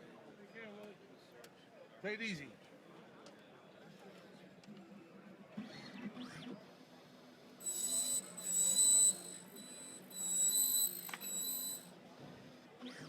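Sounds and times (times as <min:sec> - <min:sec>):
key-cutting machine whine: 0:07.6 - 0:11.9.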